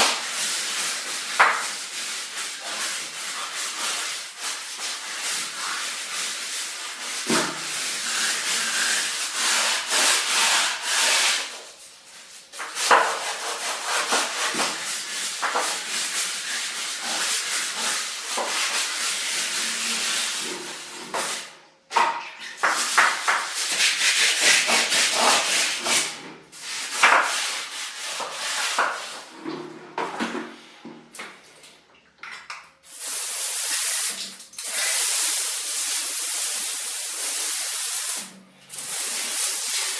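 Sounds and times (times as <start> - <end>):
spraying hiss: 32.9 - 39.9.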